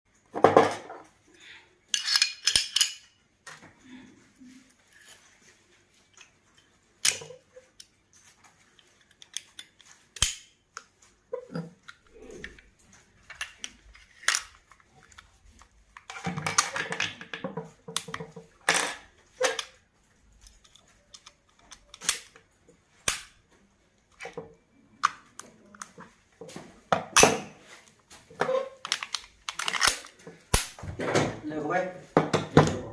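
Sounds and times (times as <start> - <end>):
metal pistol parts clicking: 1.9 - 3.1, 7.0 - 7.9, 8.8 - 10.9, 13.3 - 17.1, 20.4 - 22.4, 23.0 - 23.4, 28.8 - 30.7.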